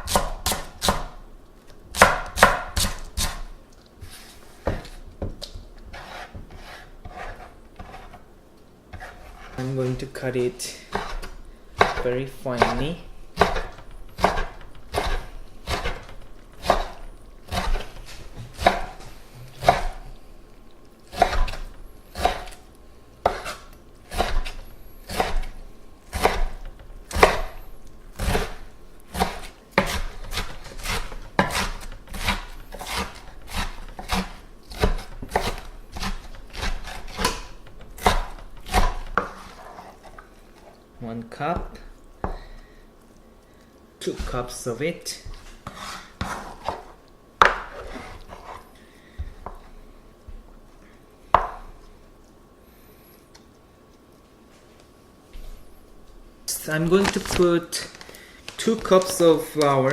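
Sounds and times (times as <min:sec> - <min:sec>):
knife chopping on cutting board: 0:00.0 - 0:01.2, 0:01.9 - 0:03.5, 0:04.6 - 0:08.2, 0:10.9 - 0:19.0, 0:19.6 - 0:20.0, 0:21.1 - 0:22.6, 0:23.2 - 0:27.6, 0:28.2 - 0:39.9, 0:45.2 - 0:48.6.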